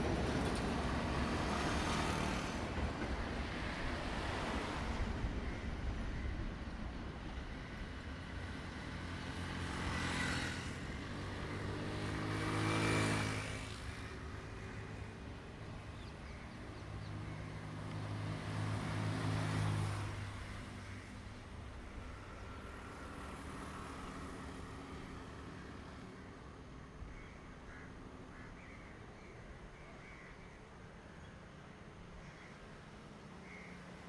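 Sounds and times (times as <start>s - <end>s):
diesel train engine drone: 0.0s - 12.6s.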